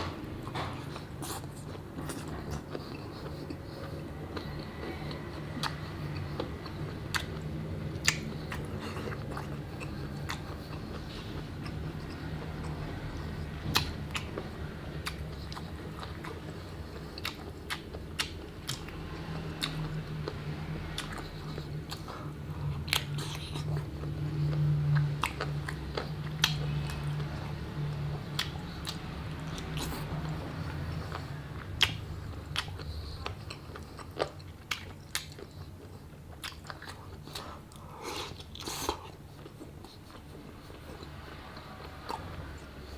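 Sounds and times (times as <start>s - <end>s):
chewing with crunches: 0.0s - 42.9s
steady low hum: 0.0s - 42.9s
wet mouth clicks: 7.1s - 11.1s, 13.7s - 14.4s.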